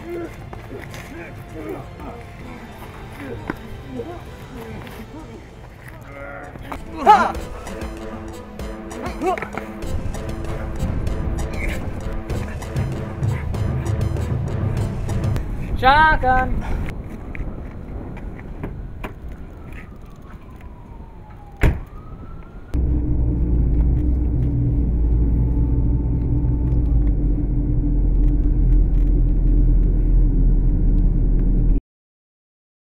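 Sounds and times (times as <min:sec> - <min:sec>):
road rumble: 0:00.0 - 0:31.8
car engine running: 0:22.8 - 0:31.8.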